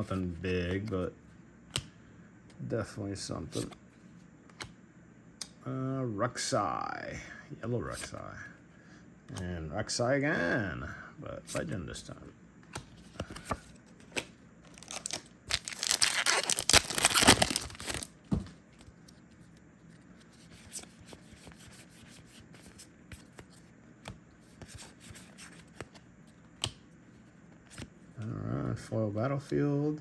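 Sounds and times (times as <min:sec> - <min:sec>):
foil wrapper tearing: 0:14.7 - 0:18.1.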